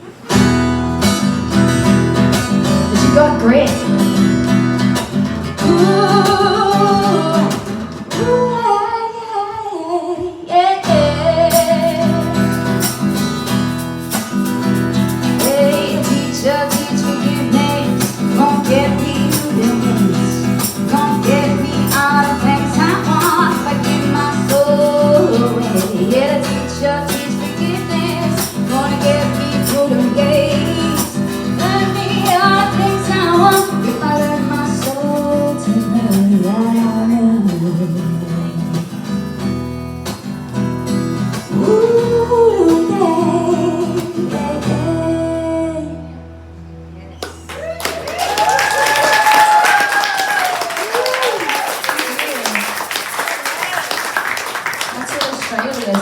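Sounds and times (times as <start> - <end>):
strummed acoustic guitar: 0.0 - 8.7, 10.8 - 47.5
person singing: 5.6 - 12.7, 15.2 - 38.9, 41.5 - 46.1.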